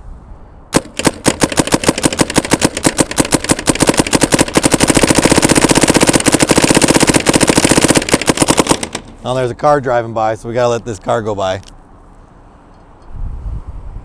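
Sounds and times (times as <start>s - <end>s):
paintball marker firing pops: 0.8s - 9.2s.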